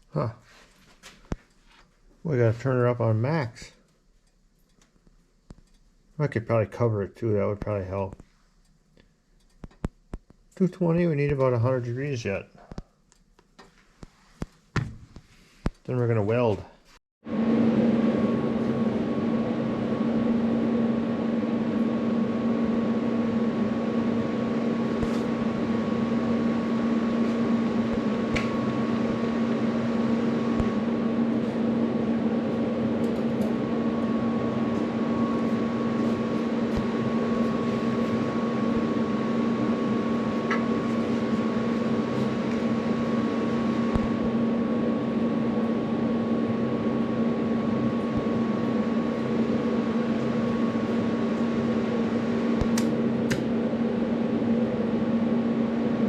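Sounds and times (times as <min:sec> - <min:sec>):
machine hum with fan rush: 0:00.0 - 0:56.0.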